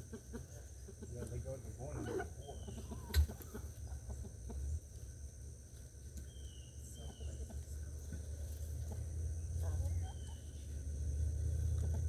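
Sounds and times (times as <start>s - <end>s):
chickens clucking: 0.0s - 5.0s, 6.9s - 9.0s.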